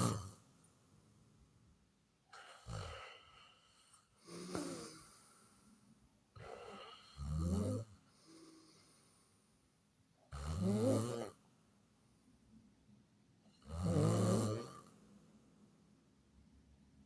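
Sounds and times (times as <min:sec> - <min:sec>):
person snoring: 0:00.0 - 0:00.4, 0:02.3 - 0:05.5, 0:06.4 - 0:09.0, 0:10.3 - 0:11.4, 0:13.6 - 0:14.9.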